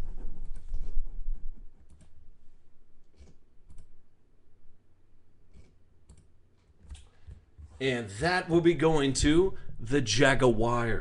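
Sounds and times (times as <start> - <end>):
computer mouse clicking: 5.5 - 7.4.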